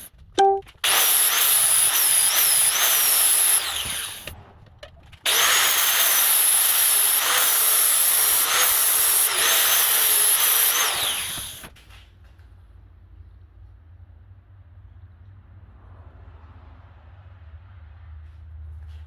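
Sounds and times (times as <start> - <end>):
electric power tool motor whine: 0.9 - 4.3, 5.3 - 11.7.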